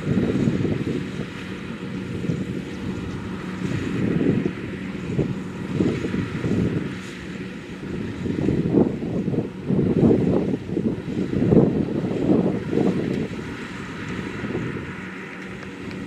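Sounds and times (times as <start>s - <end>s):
combine harvester diesel engine: 0.0s - 16.0s
wind gusting on microphone: 0.0s - 16.0s.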